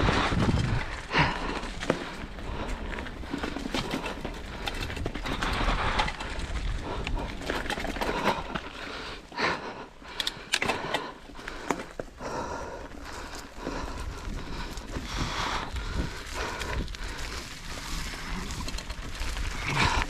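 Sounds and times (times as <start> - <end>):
bike clattering over bumps: 0.0 - 9.4
bike tyres on dirt: 0.0 - 20.0.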